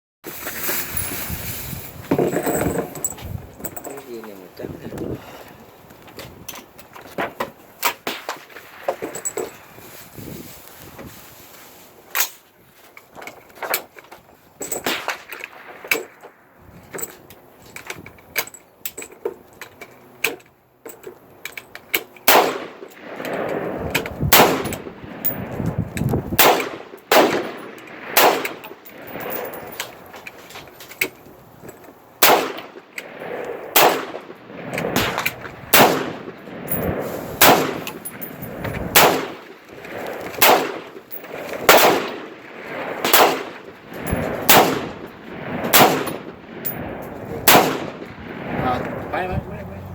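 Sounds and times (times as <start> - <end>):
rifle shots with echo: 22.3 - 25.6, 26.4 - 29.8, 32.2 - 38.0, 38.9 - 49.1.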